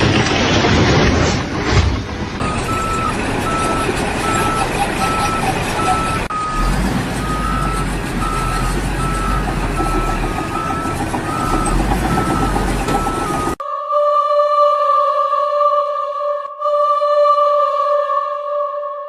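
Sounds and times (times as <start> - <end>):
construction site noise: 0.0 - 13.6
engine rumble: 0.0 - 13.6
reversing alarm beeping: 2.4 - 13.6.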